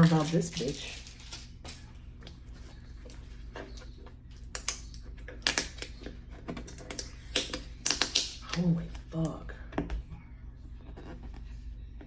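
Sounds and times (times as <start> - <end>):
hands opening taped package: 6.7 - 8.5.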